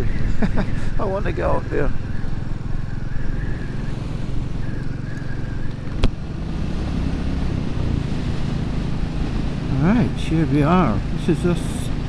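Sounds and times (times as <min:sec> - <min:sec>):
motorcycle engine running: 0:00.0 - 0:12.0
road and wind noise: 0:00.0 - 0:12.0.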